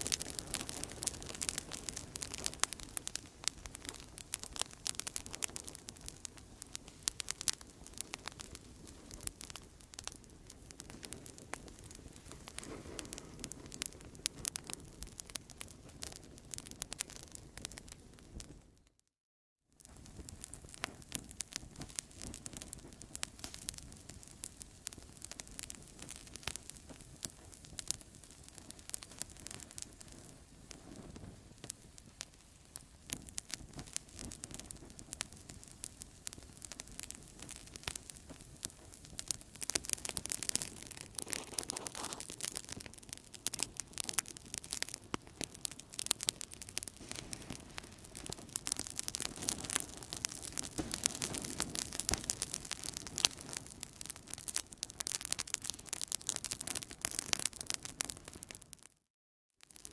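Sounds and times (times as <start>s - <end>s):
low rush of flame: 0.0s - 18.3s, 45.9s - 55.6s
burning wood popping: 0.0s - 18.6s, 19.8s - 58.9s, 59.7s - 59.9s.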